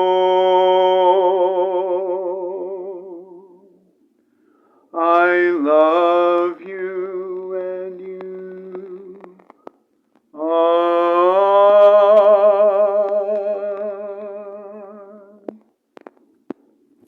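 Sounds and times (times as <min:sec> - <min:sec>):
man singing unaccompanied: 0:00.0 - 0:03.9, 0:04.9 - 0:09.5, 0:10.3 - 0:15.6
faint clicks: 0:05.2 - 0:10.3, 0:12.1 - 0:14.4.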